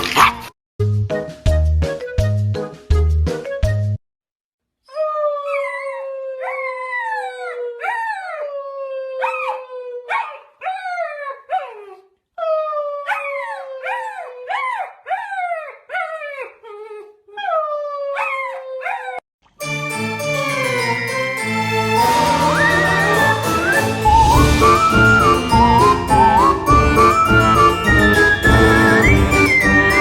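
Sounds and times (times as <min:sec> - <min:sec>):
dog yelping: 0:04.9 - 0:08.5, 0:09.1 - 0:19.2
dog howling: 0:05.0 - 0:19.2, 0:22.0 - 0:30.0.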